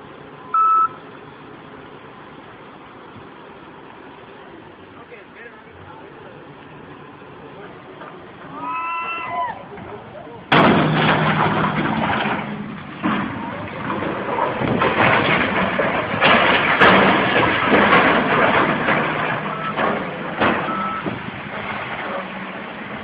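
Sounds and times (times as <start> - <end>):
heavy machinery engine drone: 0.0 - 23.0
short high beeps: 0.5 - 1.0.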